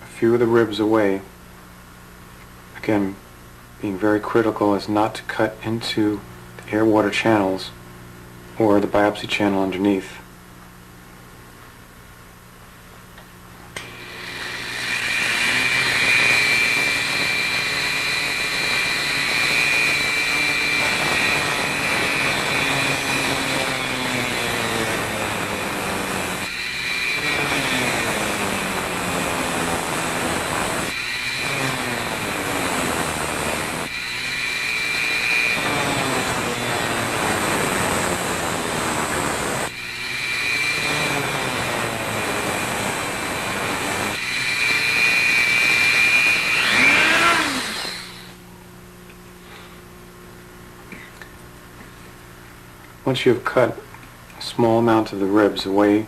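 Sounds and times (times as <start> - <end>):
rotary tool cutting metal: 13.8 - 48.4.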